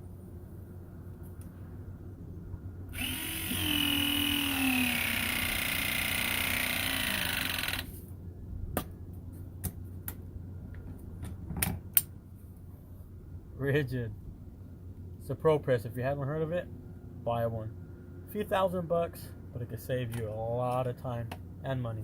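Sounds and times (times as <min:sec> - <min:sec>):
battery press tool motor: 0:02.9 - 0:08.0.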